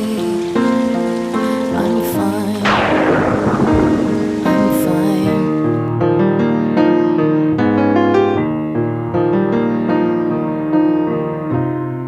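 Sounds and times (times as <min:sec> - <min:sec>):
piano music: 0:02.7 - 0:12.0.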